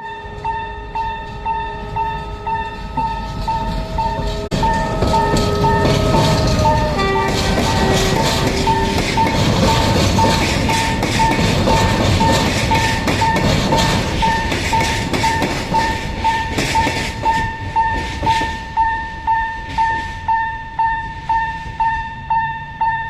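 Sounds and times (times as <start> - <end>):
train wheels clattering over rails: 2.5 - 20.2.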